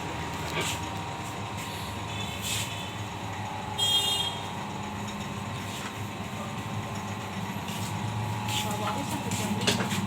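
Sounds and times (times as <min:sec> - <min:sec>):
cutting plotter motors whirring: 0:00.0 - 0:10.0.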